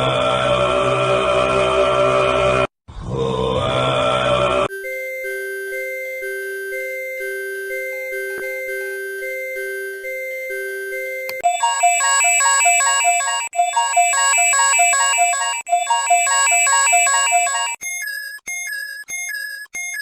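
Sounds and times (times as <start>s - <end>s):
electronic alert tones: 4.7s - 20.0s.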